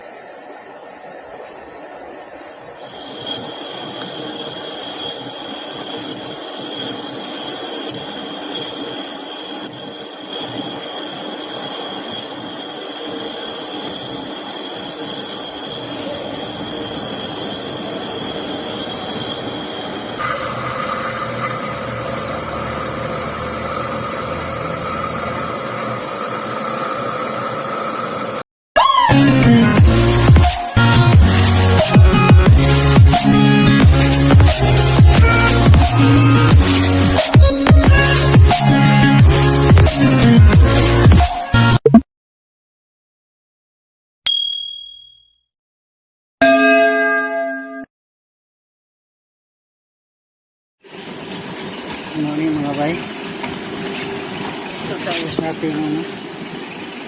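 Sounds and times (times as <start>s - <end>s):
machine running with high whine: 0.9s - 28.4s.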